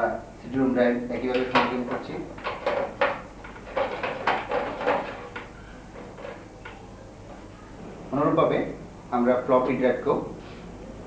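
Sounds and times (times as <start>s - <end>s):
drive knocking and clicking in case: 1.3s - 6.8s.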